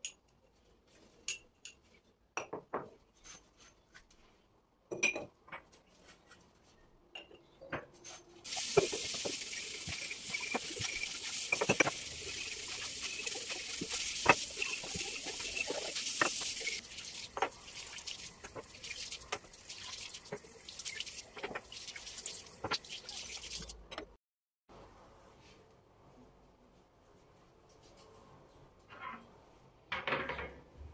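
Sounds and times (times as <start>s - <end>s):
dishes and utensils clinking: 4.9s - 5.7s, 7.1s - 17.7s
tap water running into sink: 8.5s - 23.8s.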